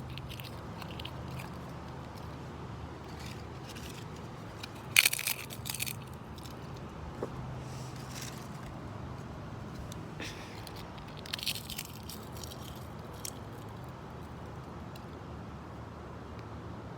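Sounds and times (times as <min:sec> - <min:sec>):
crunchy crackling of crushed material: 0:00.0 - 0:07.0, 0:09.7 - 0:13.9.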